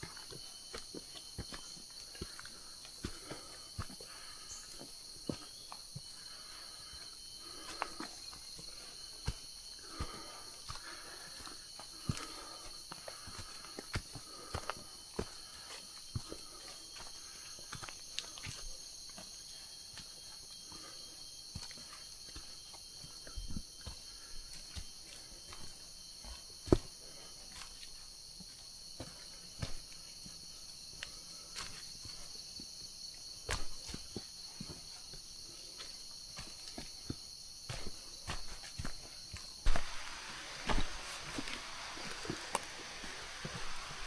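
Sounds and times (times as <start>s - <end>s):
insect chorus drone: 0.0s - 44.0s
footsteps crunching leaf litter: 39.6s - 44.0s.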